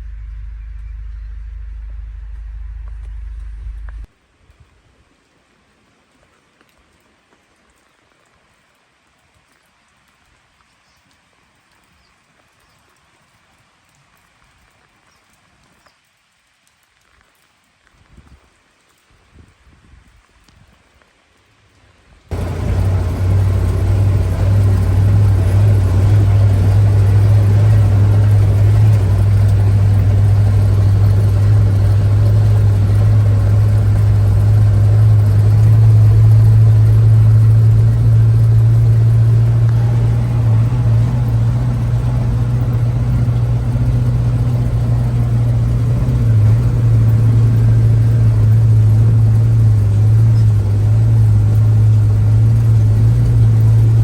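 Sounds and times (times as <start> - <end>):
truck engine droning: 0.0 - 4.1, 22.3 - 54.0.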